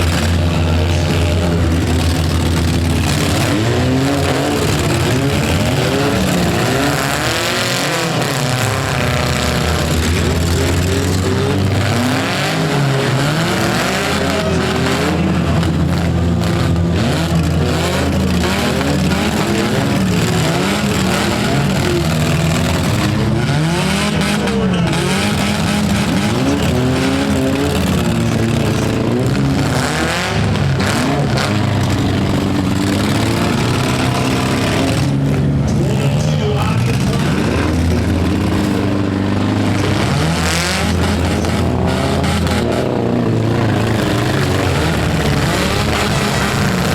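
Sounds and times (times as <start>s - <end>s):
car engines revving: 0.0s - 46.9s.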